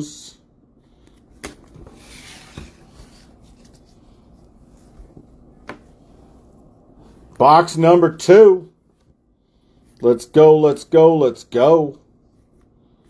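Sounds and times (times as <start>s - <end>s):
rustling of card packs and boxes: 1.0s - 5.4s.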